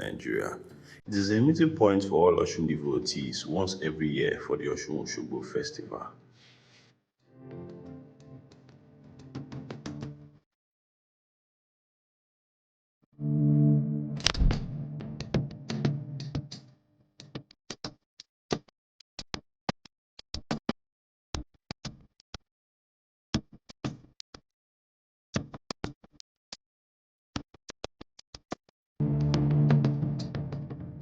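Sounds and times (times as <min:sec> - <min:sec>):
music: 0:00.0 - 0:06.4, 0:07.2 - 0:10.4, 0:13.1 - 0:17.5, 0:29.0 - 0:31.0
short sharp clicks: 0:14.2 - 0:14.6.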